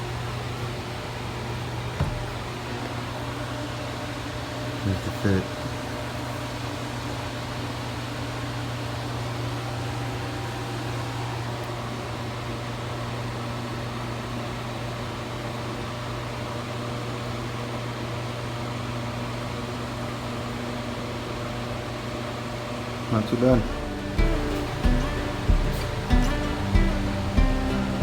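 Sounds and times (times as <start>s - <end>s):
machine hum: 0.0s - 14.0s, 23.4s - 28.0s.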